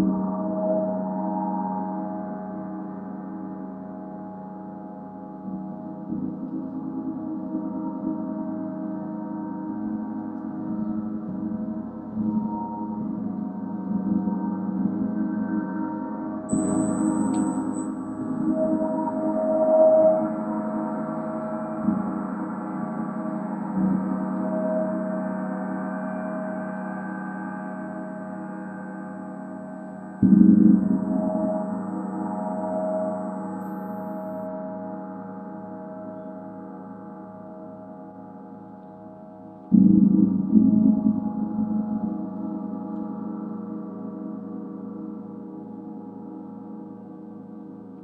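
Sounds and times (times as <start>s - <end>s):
gong ringing: 16.5s - 18.5s.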